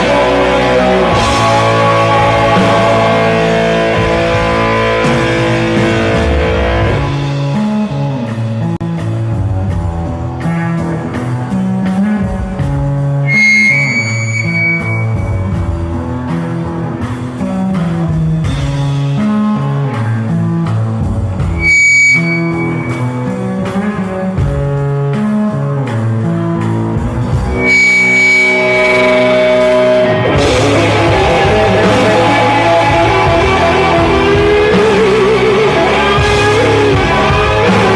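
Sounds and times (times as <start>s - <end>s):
live rock band instrumental: 0.0s - 37.9s
bright high held notes: 13.3s - 15.6s, 21.5s - 23.4s, 27.5s - 30.3s.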